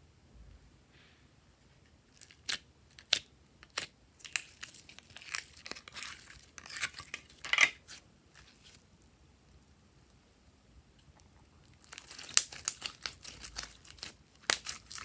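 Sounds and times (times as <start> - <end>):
plastic packaging crinkling: 4.2 - 8.8, 11.8 - 15.0.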